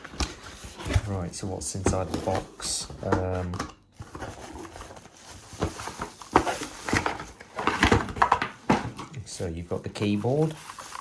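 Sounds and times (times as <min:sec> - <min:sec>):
packaging rustling and scraping: 0:00.0 - 0:11.0
cardboard box being opened: 0:01.9 - 0:08.5.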